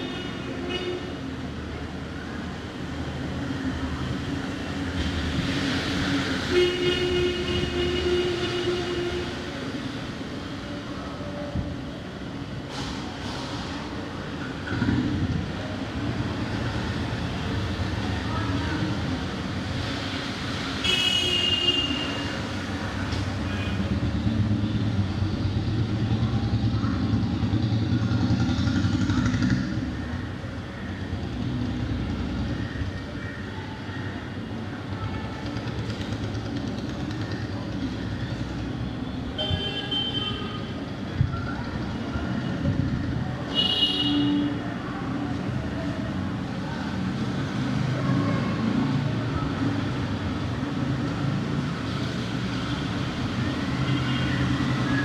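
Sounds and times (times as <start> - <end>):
traffic on a wet road: 0.0 - 55.0
vehicle horns honking: 20.8 - 22.3.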